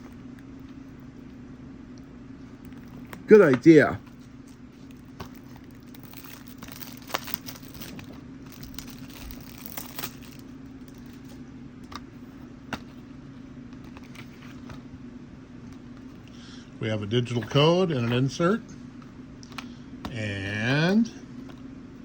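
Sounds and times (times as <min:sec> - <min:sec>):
plastic wrap tearing and crinkling: 0:05.3 - 0:11.3.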